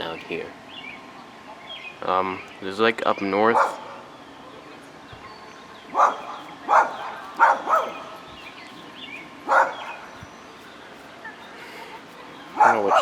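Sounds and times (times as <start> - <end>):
dog barking: 3.5 - 4.0, 5.9 - 8.2, 9.4 - 10.1, 12.6 - 13.0.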